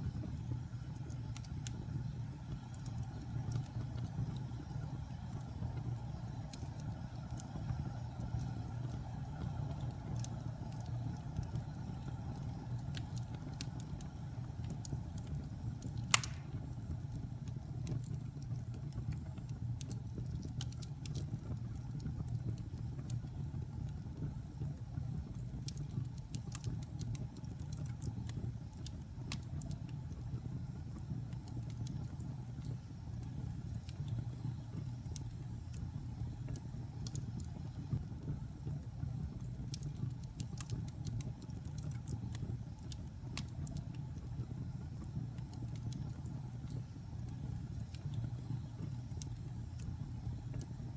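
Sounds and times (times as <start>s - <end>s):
fire rumbling and crackling: 0.0s - 50.9s
loud pop of burning wood: 16.0s - 16.8s.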